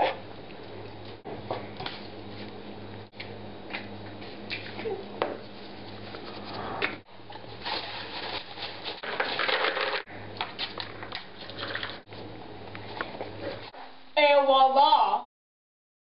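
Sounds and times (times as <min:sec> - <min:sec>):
steady low electrical hum: 0:00.0 - 0:15.2
scraping and rubbing handling noises: 0:05.4 - 0:10.0.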